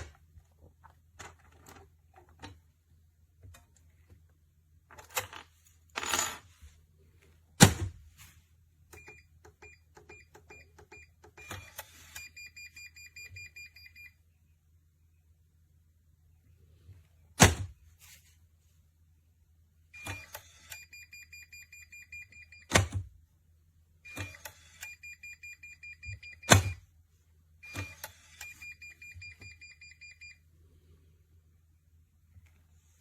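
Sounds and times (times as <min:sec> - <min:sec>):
electronic safe beeping: 0:08.9 - 0:14.2, 0:20.0 - 0:22.9, 0:24.0 - 0:26.8, 0:27.6 - 0:30.4.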